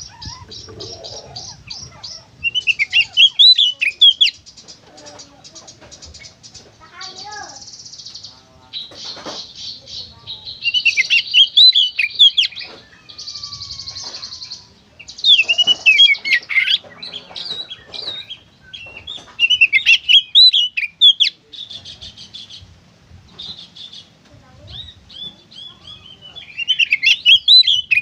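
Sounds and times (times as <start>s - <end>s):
bird singing whistled phrases: 24.8s - 28.0s.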